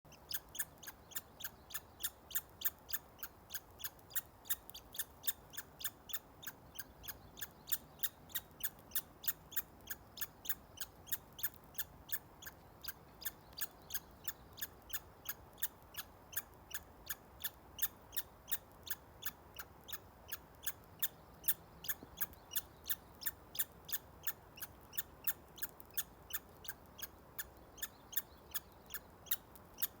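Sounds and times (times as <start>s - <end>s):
squirrel squeaking: 0.1s - 30.0s.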